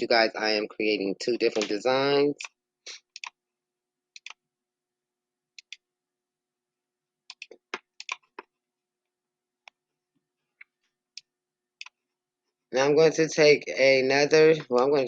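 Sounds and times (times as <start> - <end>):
mouse and keyboard clicks: 1.5 - 1.8, 2.4 - 3.4, 4.2 - 4.4, 5.6 - 5.8, 7.3 - 8.5.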